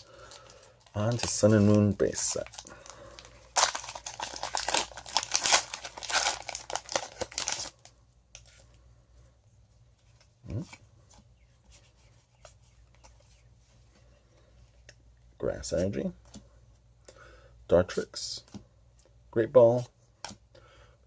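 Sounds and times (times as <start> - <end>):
foil wrapper tearing and crinkling: 0.2 - 7.9.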